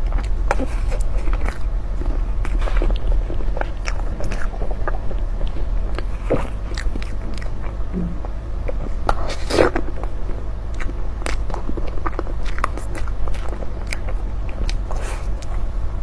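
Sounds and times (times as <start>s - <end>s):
chewing and biting: 0.0s - 15.7s
low hum: 0.0s - 16.0s.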